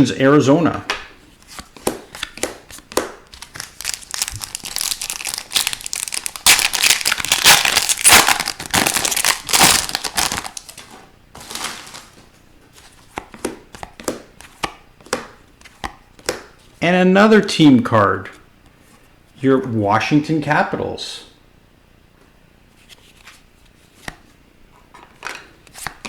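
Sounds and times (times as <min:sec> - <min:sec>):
foil wrapper crinkling and tearing: 0:03.3 - 0:12.2.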